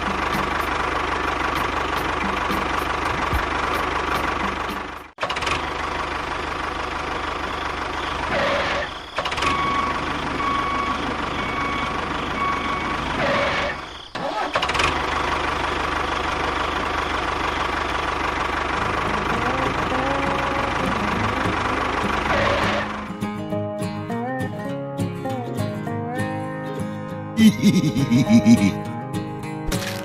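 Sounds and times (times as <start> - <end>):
small engine running: 13.0 - 23.2.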